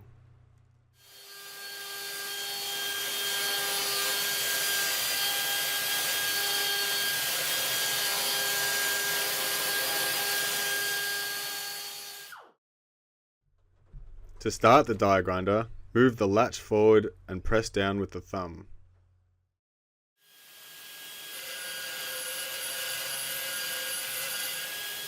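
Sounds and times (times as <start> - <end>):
pneumatic grinder grinding metal: 1.0 - 12.4.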